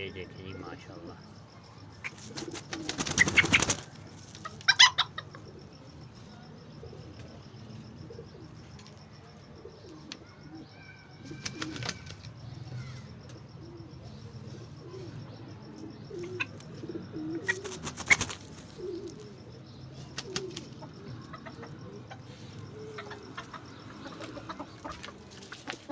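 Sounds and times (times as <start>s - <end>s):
clatters of wings or feet: 2.0s - 4.8s, 11.2s - 12.4s, 17.4s - 19.3s, 20.0s - 21.4s, 22.9s - 25.9s
chickens clucking softly: 2.0s - 7.4s, 13.6s - 25.9s.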